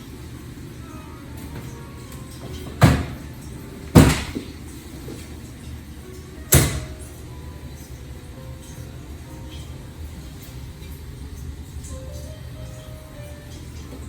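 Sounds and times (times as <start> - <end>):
sharp knocks: 4.0 - 4.5.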